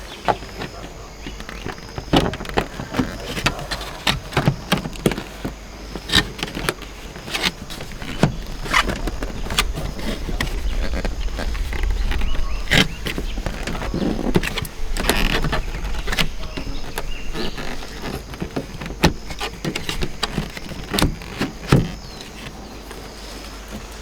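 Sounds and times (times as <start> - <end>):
objects clicking and knocking: 0.0 - 24.0
low rumble: 8.4 - 15.0.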